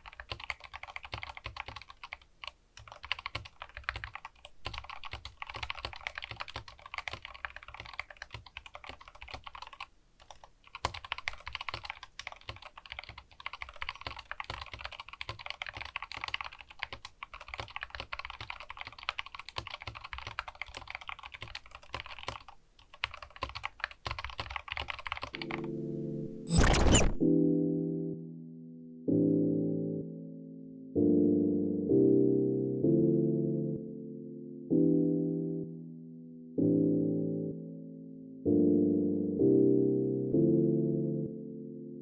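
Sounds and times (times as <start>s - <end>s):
mechanical keyboard typing: 0.0s - 25.8s.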